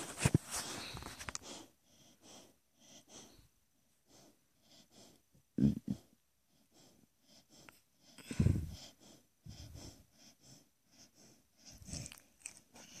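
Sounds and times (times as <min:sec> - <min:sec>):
dog snoring: 0:08.1 - 0:13.0.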